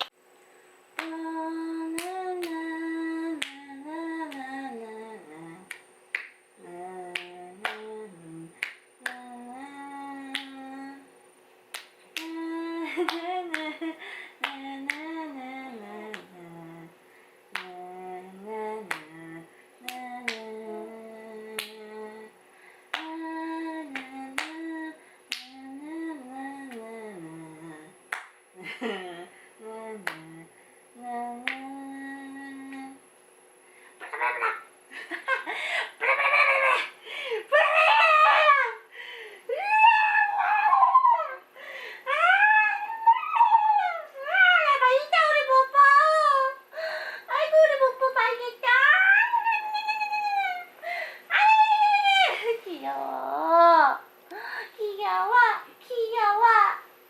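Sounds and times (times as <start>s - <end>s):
finger snaps: 1.0s - 1.2s, 1.9s - 2.7s, 3.4s - 3.7s, 5.6s - 6.4s, 7.1s - 7.9s, 8.6s - 9.3s, 10.2s - 10.7s, 11.7s - 13.8s, 16.1s - 16.4s, 17.5s - 17.8s, 18.9s - 19.2s, 19.8s - 20.6s, 21.5s - 21.9s, 22.9s - 23.2s, 23.9s - 24.6s, 25.3s - 25.7s, 26.6s - 26.9s, 28.1s - 28.4s, 30.0s - 30.4s, 31.4s - 31.8s, 32.6s - 32.9s
person humming a melody: 1.0s - 5.8s, 6.6s - 11.1s, 12.2s - 17.0s, 17.6s - 22.3s, 22.9s - 28.0s, 28.6s - 33.0s, 42.0s - 46.6s, 51.3s - 56.8s.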